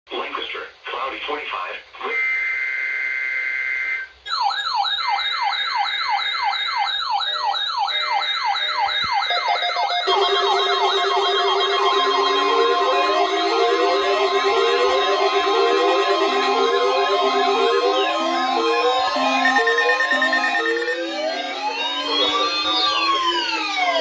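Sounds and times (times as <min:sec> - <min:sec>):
warbling electronic siren: 0:04.3 - 0:24.0
digital data tones: 0:05.5 - 0:24.0
steady and gliding tones: 0:10.1 - 0:24.0.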